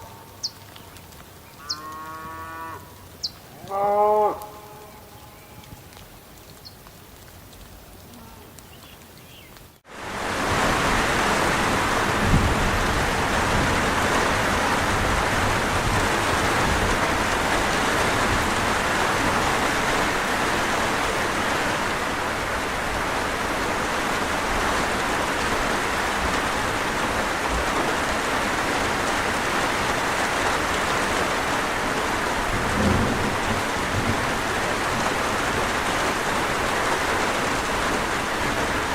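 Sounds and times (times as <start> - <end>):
heavy rain: 0.0 - 38.9
thunder rumbling: 10.3 - 29.0, 31.1 - 38.9.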